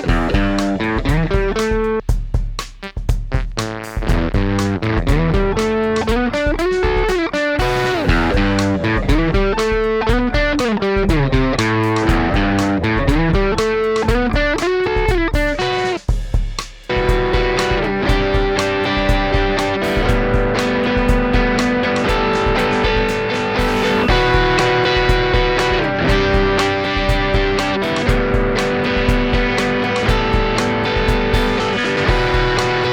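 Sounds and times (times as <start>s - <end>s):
electric guitar single-note runs: 7.6s - 13.6s, 17.2s - 32.9s.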